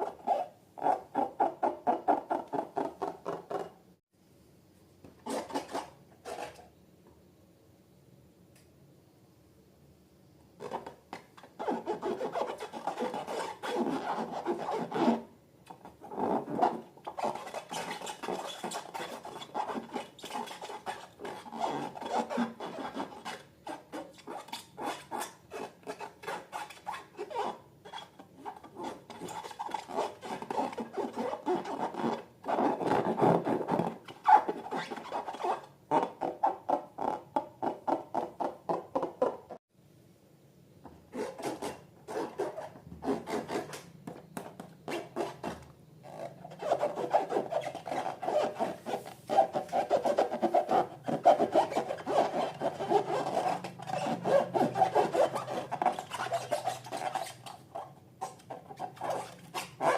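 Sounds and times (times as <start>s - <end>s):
slime rubbing and scraping: 11.5s - 15.2s, 15.8s - 36.6s, 41.2s - 59.9s.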